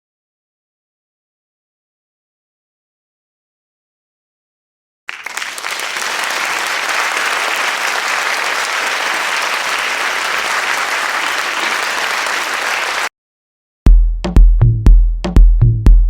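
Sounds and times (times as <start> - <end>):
crowd clapping: 5.1 - 13.1.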